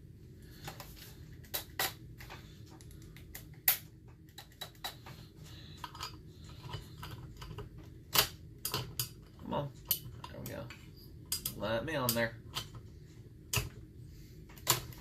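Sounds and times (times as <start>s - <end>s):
clicks and taps of tools handled: 0.7s - 5.2s, 9.8s - 12.8s.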